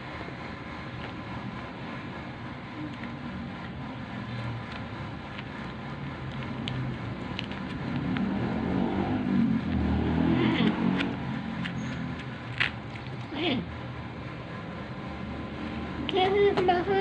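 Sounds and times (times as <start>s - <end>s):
vehicle engine droning: 0.0s - 17.0s.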